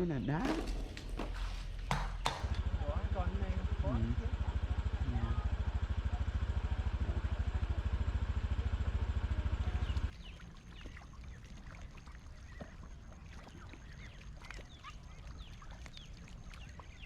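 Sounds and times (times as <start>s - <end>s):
small engine thumping: 0.3s - 10.1s.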